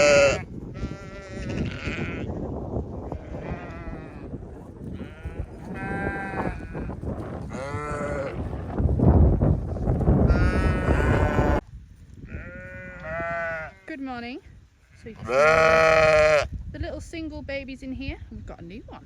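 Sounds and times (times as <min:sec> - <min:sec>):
sheep bleating: 0:00.0 - 0:02.3, 0:03.1 - 0:04.4, 0:05.0 - 0:08.4, 0:10.3 - 0:11.6, 0:12.3 - 0:13.9, 0:14.9 - 0:16.5.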